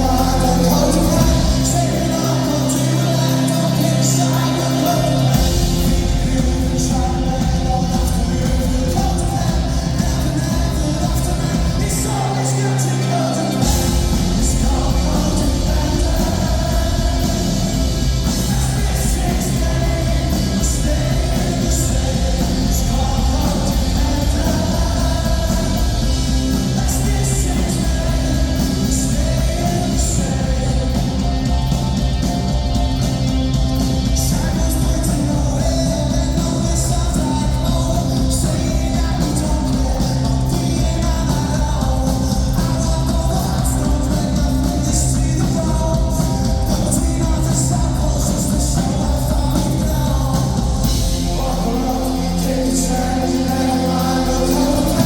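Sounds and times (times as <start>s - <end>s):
bass guitar: 0.0s - 55.0s
drums: 0.0s - 55.0s
electric guitars: 0.0s - 55.0s
live rock band playing: 0.0s - 55.0s
person singing: 0.0s - 55.0s.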